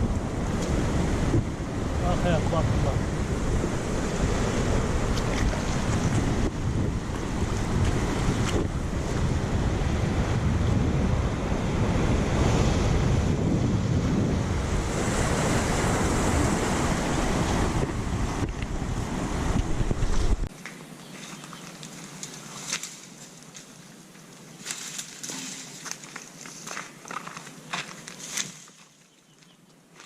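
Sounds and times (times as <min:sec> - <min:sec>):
sea waves surging: 0:00.0 - 0:20.5
wind buffeting microphone: 0:00.0 - 0:20.5.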